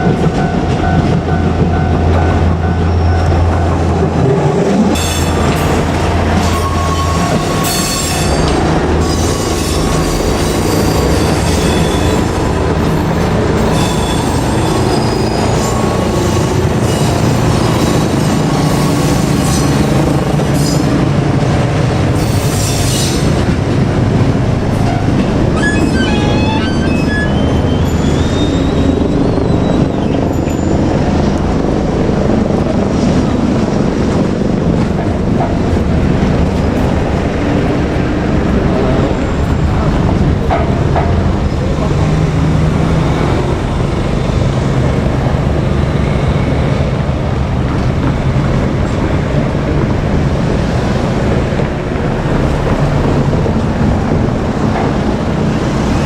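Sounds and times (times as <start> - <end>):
diesel train rumbling past: 0.0 - 56.0
high-pitched wheel squeals: 5.0 - 12.5, 25.5 - 30.8.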